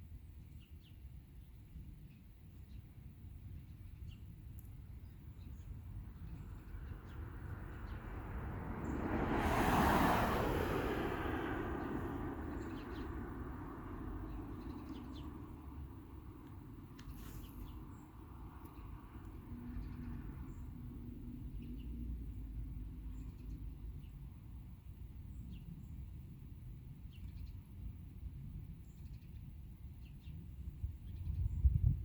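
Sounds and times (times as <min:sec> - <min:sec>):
vehicle passing: 0:06.6 - 0:16.0.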